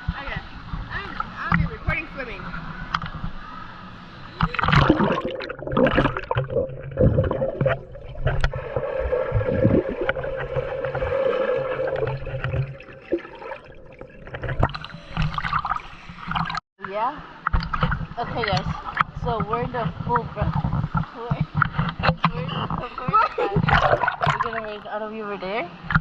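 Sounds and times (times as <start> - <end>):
water splashing from swimming: 4.2 - 16.6, 17.3 - 26.0.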